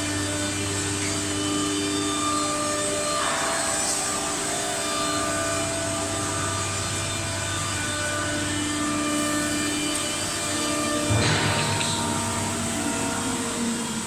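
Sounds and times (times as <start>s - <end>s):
router machine whining: 0.0s - 14.0s.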